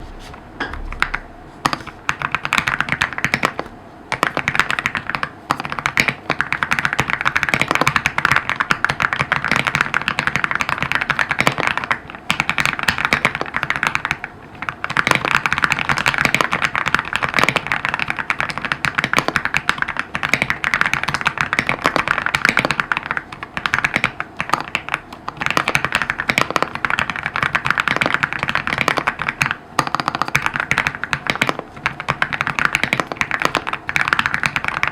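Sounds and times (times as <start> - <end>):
mechanical keyboard typing: 0.8 - 34.9.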